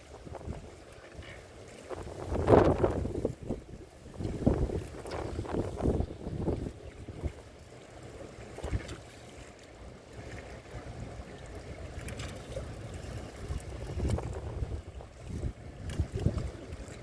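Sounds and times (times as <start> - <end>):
wind buffeting microphone: 0.0 - 0.8, 1.9 - 7.5, 13.0 - 17.0.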